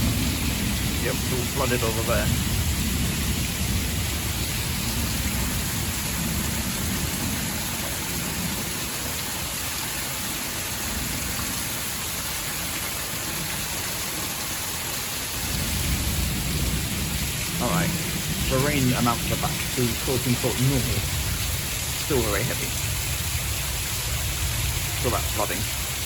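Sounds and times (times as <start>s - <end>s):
heavy rain pouring: 0.0s - 26.0s
low rumble: 15.4s - 26.0s.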